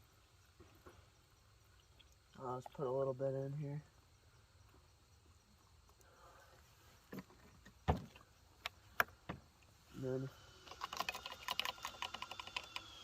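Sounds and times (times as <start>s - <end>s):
sharp clicks and knocks: 10.6s - 13.0s.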